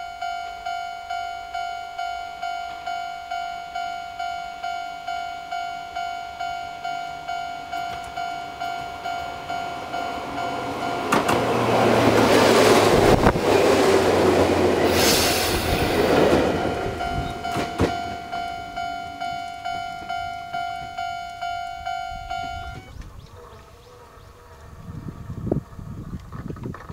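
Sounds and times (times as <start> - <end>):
level crossing electronic bell: 0.0 - 12.2, 15.7 - 22.9
train wheels clacking over rail joints: 10.6 - 18.6.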